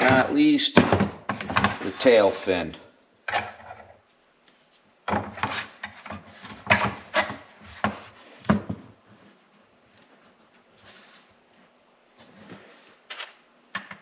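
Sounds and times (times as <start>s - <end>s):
hard parts scraping and clunking: 0.0s - 2.6s.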